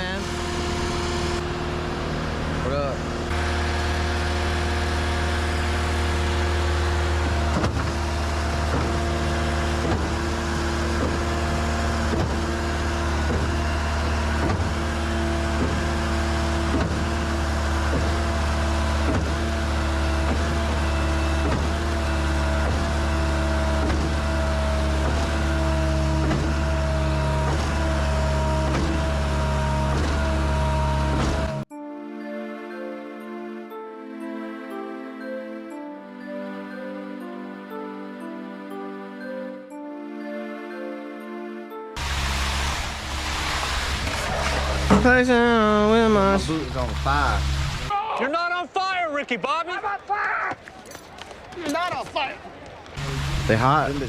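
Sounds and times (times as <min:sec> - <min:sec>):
concrete mixer truck engine drone: 0:00.0 - 0:31.7, 0:42.0 - 0:47.9, 0:53.0 - 0:54.0.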